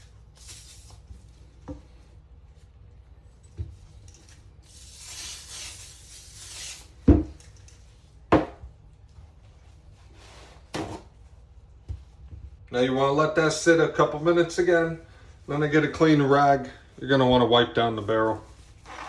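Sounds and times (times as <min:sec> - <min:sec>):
aerosol can spraying: 0:00.4 - 0:01.2, 0:04.2 - 0:07.0.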